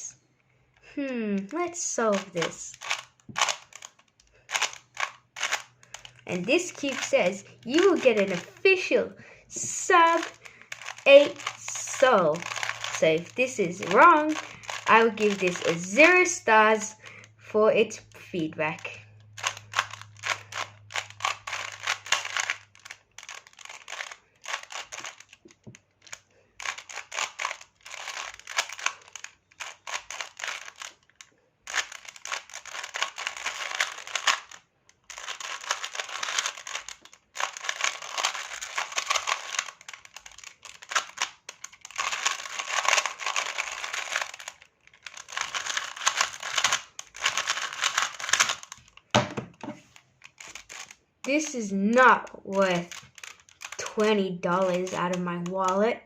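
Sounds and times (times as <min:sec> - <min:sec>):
plastic puzzle cube clacking: 0:01.4 - 0:16.4, 0:18.8 - 0:55.9.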